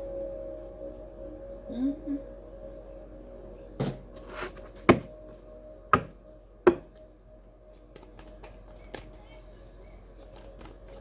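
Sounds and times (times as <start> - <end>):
faint steady hum: 0.0 - 11.0
taps on a tabletop: 6.7 - 6.9.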